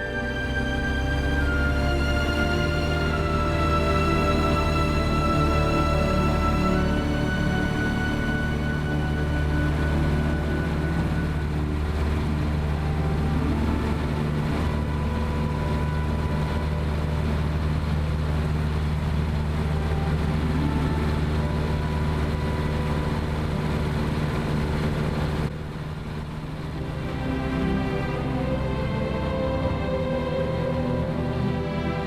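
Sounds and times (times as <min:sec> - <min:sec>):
aircraft engine droning: 0:00.0 - 0:32.0.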